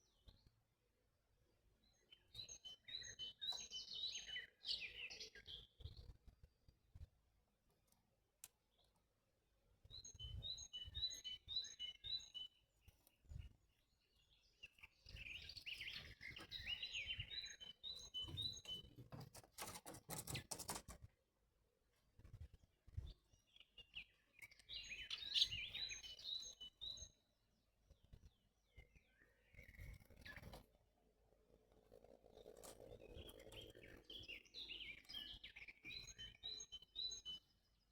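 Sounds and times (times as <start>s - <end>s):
songbird chirping: 0.0s - 6.7s, 7.8s - 21.0s, 22.5s - 37.9s.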